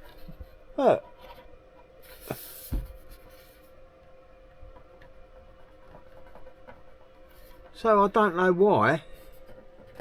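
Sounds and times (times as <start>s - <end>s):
faint steady hum: 0.0s - 10.0s
soft knock: 2.7s - 3.2s.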